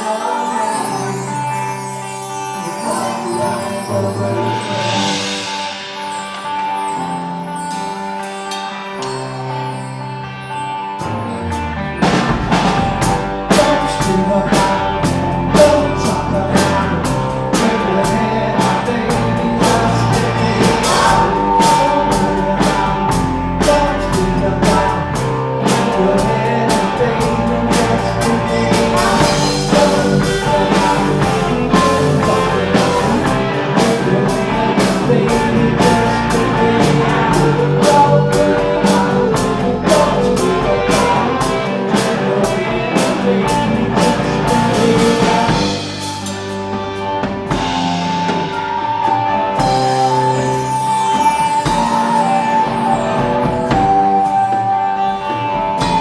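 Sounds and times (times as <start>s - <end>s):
rock band music: 0.0s - 56.0s
drum kit beat: 12.0s - 56.0s.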